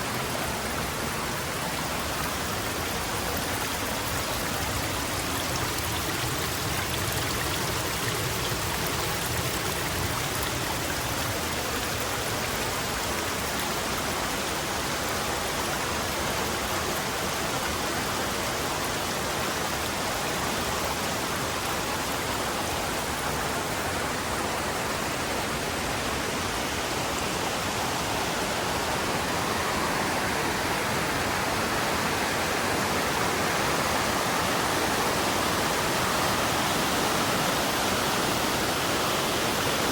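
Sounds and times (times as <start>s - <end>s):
river rushing: 0.0s - 39.9s.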